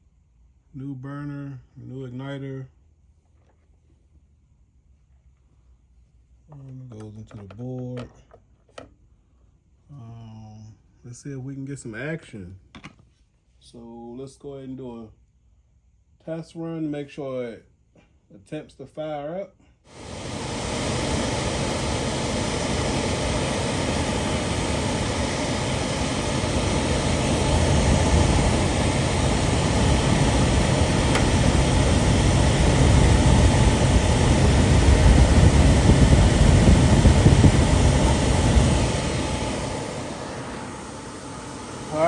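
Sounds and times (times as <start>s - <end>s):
furnace blower rushing air: 19.9s - 42.0s.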